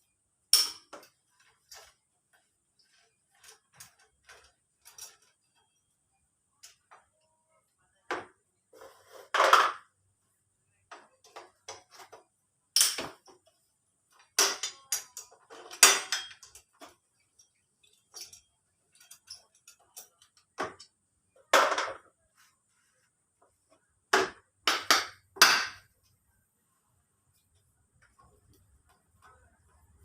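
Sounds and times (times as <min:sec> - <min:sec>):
metal tools clinking and knocking: 0:00.5 - 0:07.2, 0:10.9 - 0:13.5, 0:14.1 - 0:22.1.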